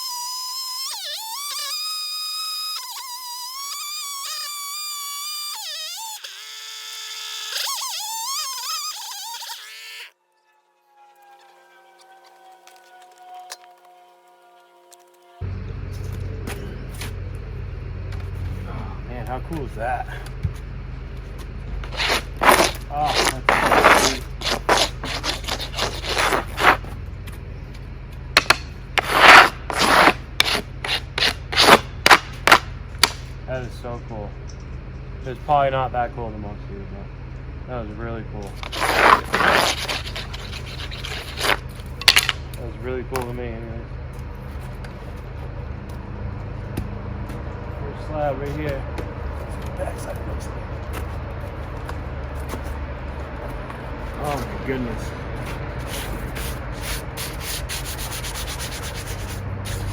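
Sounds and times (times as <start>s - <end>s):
wood rubbing and scraping: 10.8s - 35.4s, 38.4s - 59.9s
sharp wood knocks: 28.4s - 28.7s
chainsaw cutting through log: 28.4s - 33.3s, 38.6s - 42.6s.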